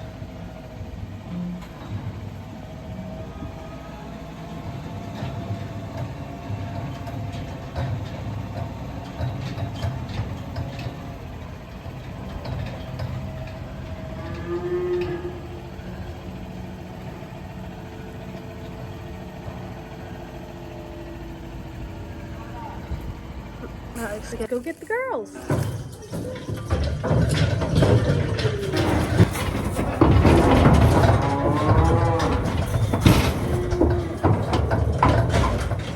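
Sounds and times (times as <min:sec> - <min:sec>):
cow mooing: 0:14.1 - 0:15.6, 0:30.7 - 0:34.3.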